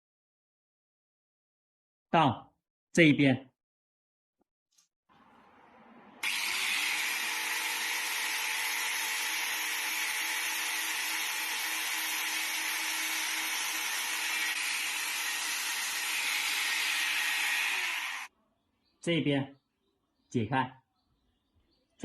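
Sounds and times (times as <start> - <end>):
electric grinder grinding: 6.2 - 18.3.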